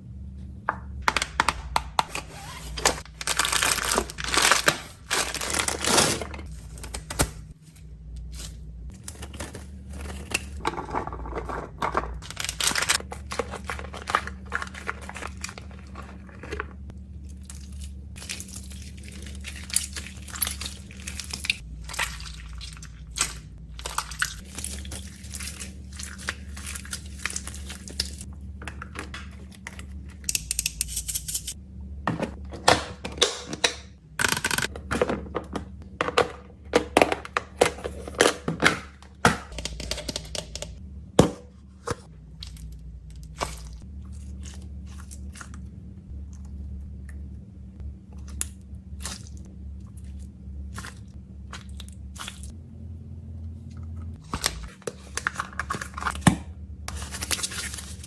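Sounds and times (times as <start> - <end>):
plastic packaging crinkling and tearing: 2.1 - 7.5, 12.2 - 16.5.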